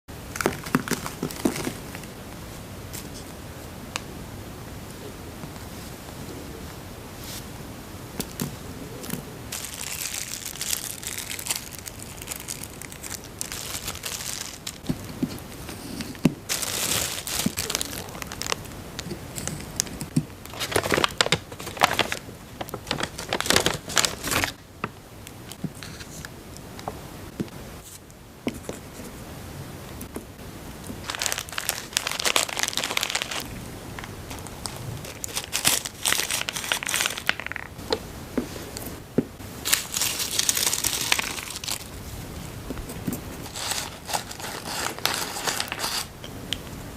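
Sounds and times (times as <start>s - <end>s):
candy wrapper crinkling and tearing: 9.5s - 14.9s, 16.5s - 19.9s, 20.5s - 24.6s, 31.0s - 37.7s, 39.7s - 41.9s, 43.4s - 46.1s.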